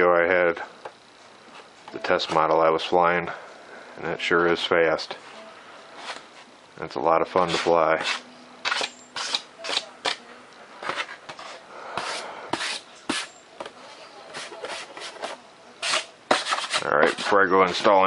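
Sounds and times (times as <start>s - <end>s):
foam model rubbing and scraping: 10.8s - 13.3s, 14.3s - 18.0s.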